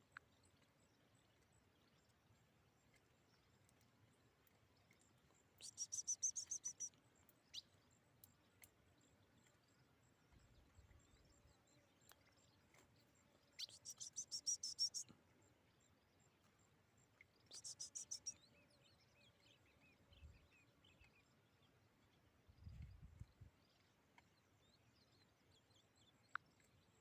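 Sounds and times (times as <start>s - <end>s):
small bird chirping trills: 0.0s - 27.0s.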